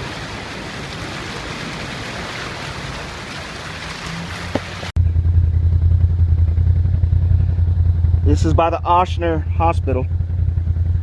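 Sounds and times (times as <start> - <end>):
loud steady low drone: 5.0 - 11.0.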